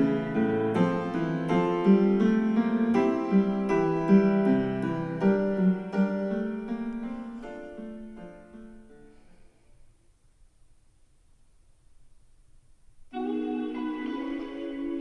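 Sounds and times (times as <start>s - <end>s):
piano music through speakers: 0.0s - 9.4s, 13.1s - 15.0s.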